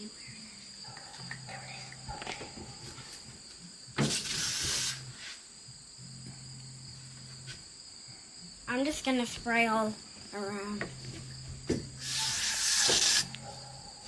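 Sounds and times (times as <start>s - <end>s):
crickets chirping: 0.0s - 14.0s
aerosol spray hiss: 4.0s - 5.4s, 12.0s - 13.4s.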